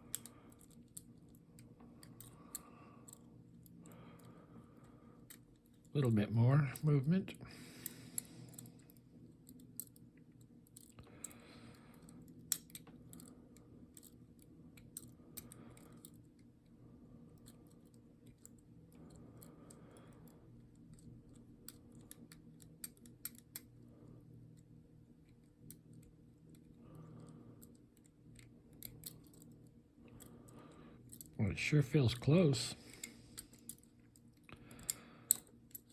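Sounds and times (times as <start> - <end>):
lock pick clicks and scraping: 20.8 - 23.8.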